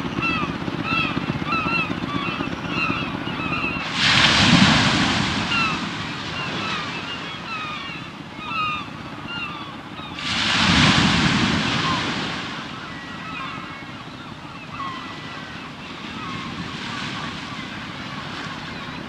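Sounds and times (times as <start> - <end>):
birds chirping: 0.0 - 3.8, 5.5 - 10.2, 11.8 - 16.6
low rumble of surf: 0.0 - 19.0
ocean waves crashing: 3.8 - 7.9, 10.2 - 13.4.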